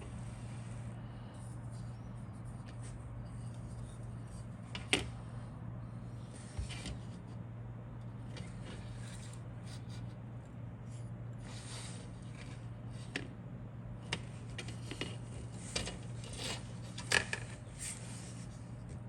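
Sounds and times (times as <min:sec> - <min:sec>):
low electrical hum: 0:00.0 - 0:19.0.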